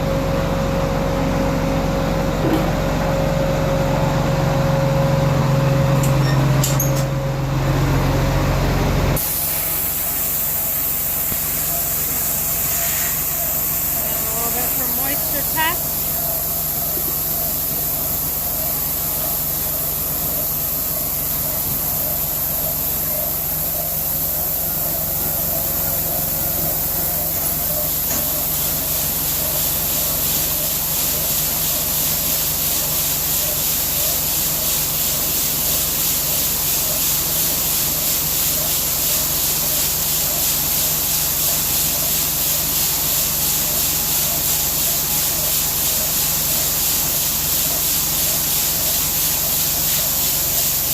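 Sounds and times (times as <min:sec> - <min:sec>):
machinery hum: 0:00.0 - 0:36.0.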